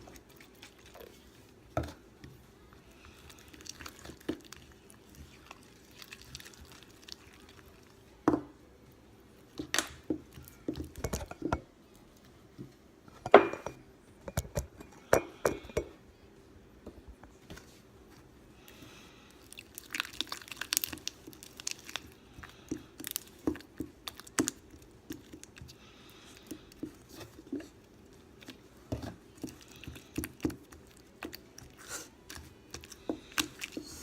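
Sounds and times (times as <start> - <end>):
utensil clinking against a bowl: 10.7 - 11.6.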